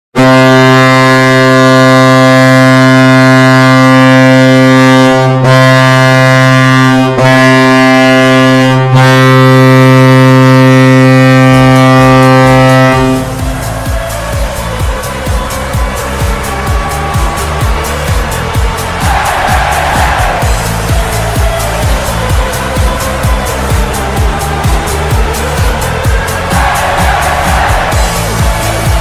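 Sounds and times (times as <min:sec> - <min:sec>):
loud low goal horn: 0:00.1 - 0:29.0
music with a regular beat: 0:11.8 - 0:29.0.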